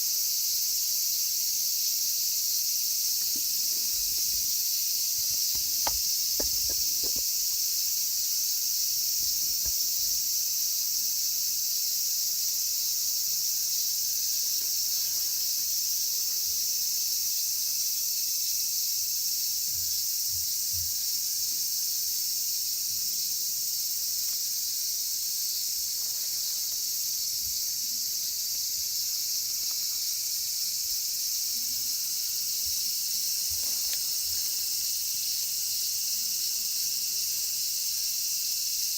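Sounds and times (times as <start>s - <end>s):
cicadas singing: 0.0s - 38.9s.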